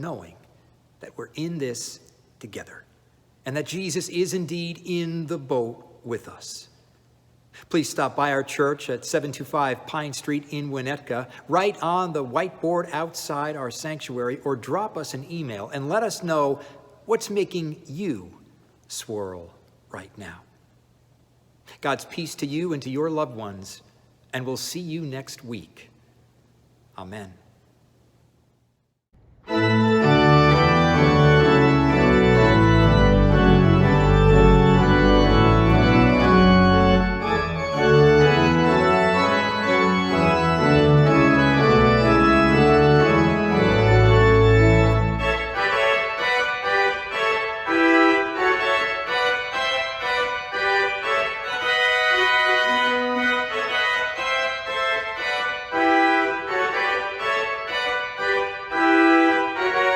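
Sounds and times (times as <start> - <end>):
church organ playing chords: 29.4 - 59.9.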